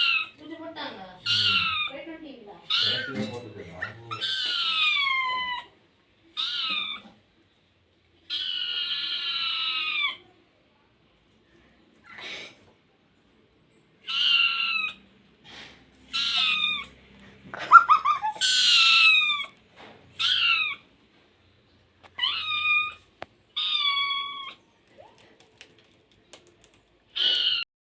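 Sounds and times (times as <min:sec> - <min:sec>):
cat meowing: 0:01.2 - 0:01.9, 0:02.6 - 0:03.4, 0:04.1 - 0:05.7, 0:06.4 - 0:07.2, 0:08.3 - 0:10.2, 0:14.1 - 0:15.1, 0:16.1 - 0:17.1, 0:18.3 - 0:19.6, 0:20.2 - 0:20.9, 0:22.0 - 0:24.6, 0:27.2 - 0:27.6.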